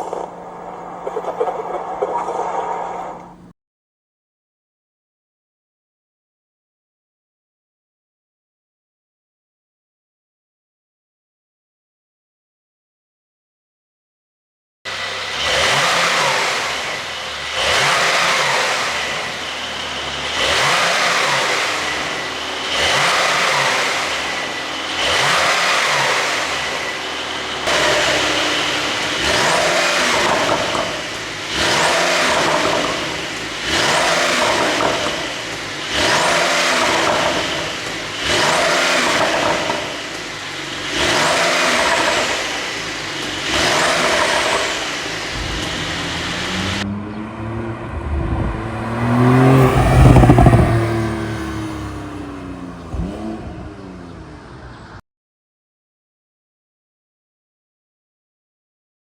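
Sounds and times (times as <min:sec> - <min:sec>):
car engine revving: 0:00.0 - 0:03.5, 0:14.9 - 0:54.8
exhaust popping and crackling: 0:00.0 - 0:03.5, 0:25.0 - 0:52.1.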